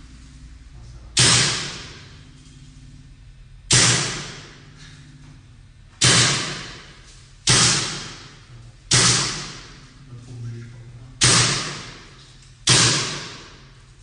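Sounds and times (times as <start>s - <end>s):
paintball gun shots: 1.2s - 1.9s, 3.7s - 4.4s, 6.0s - 6.8s, 7.5s - 8.2s, 8.9s - 9.6s, 11.2s - 12.0s, 12.7s - 13.5s.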